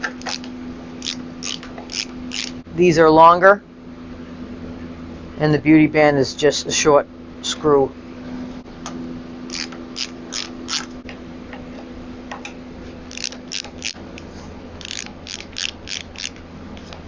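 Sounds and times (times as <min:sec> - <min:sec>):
ratcheting screwdriver clicking: 0:14.8 - 0:17.0.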